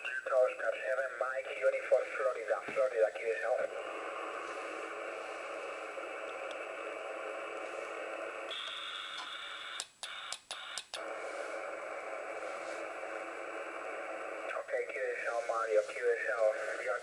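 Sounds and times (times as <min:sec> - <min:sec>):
radio static hiss: 0:00.0 - 0:17.0
audio clicks: 0:06.2 - 0:06.7, 0:08.5 - 0:11.0.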